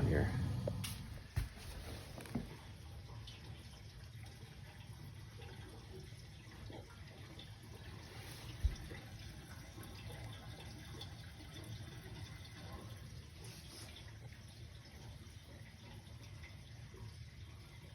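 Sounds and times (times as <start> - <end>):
pump running: 0.0 - 3.5
water trickling through pipes: 0.0 - 17.9.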